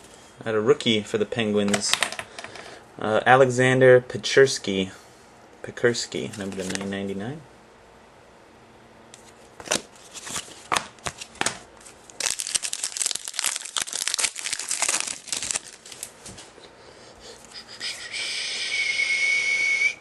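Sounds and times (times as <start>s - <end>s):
wrapping crinkling: 6.4s - 6.9s, 9.6s - 16.4s.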